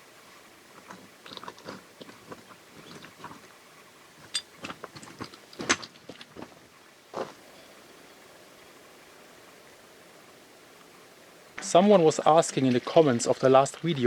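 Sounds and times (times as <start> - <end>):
footsteps crunching on stones: 0.7 - 7.5
clicks of stone: 0.8 - 3.5, 4.2 - 7.4.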